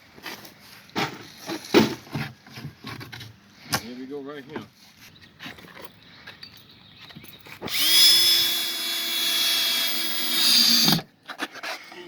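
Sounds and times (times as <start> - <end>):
power drill whining: 7.7 - 11.1.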